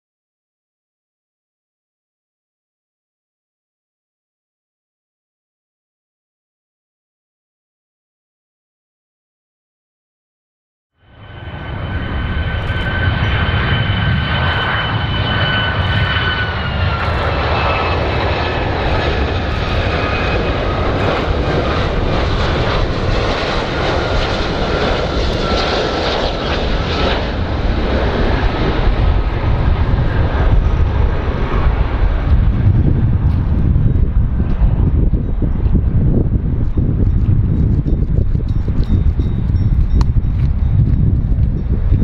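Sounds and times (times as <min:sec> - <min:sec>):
airplane engines roaring: 0:11.0 - 0:42.0.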